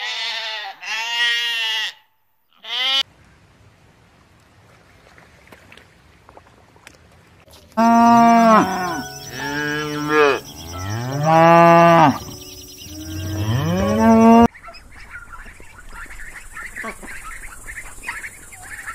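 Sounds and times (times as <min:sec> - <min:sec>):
cow mooing: 0:07.8 - 0:14.5.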